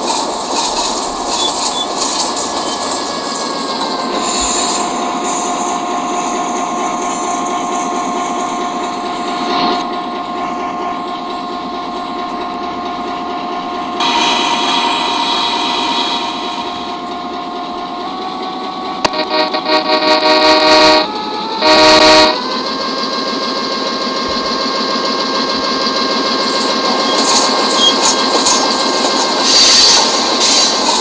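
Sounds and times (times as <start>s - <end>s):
high wheel squeals: 0.0s - 7.9s, 26.4s - 31.0s
freight train running: 0.0s - 31.0s
locomotive horn blasts: 19.0s - 22.6s.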